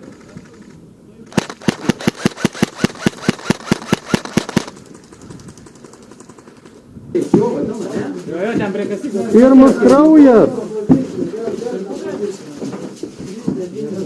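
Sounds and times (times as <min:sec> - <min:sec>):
airsoft gun rapid firing: 0:00.0 - 0:06.7.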